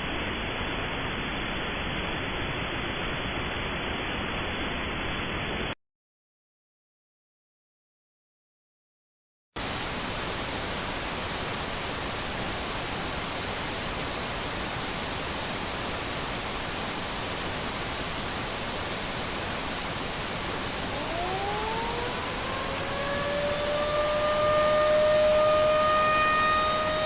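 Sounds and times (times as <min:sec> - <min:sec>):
static hiss: 0:09.6 - 0:27.0
siren winding up: 0:20.9 - 0:27.0.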